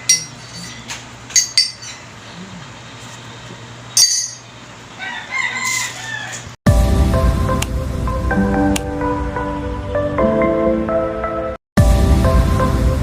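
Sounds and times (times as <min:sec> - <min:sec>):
tableware clinking: 0:00.0 - 0:02.1, 0:04.0 - 0:04.5
rooster crowing: 0:04.9 - 0:06.6
music: 0:06.7 - 0:13.0.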